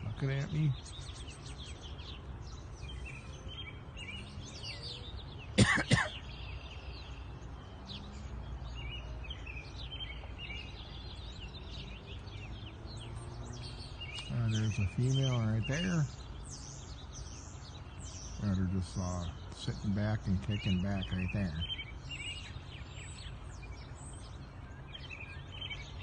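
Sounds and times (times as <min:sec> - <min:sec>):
birds chirping: 0:00.0 - 0:26.0
person coughing: 0:05.6 - 0:06.2.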